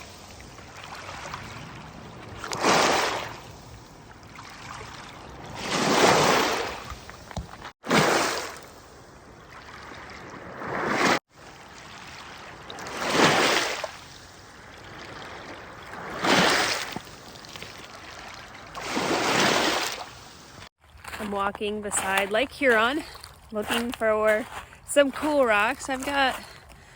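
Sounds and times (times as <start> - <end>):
small waves washing onto shore: 0.0 - 21.2.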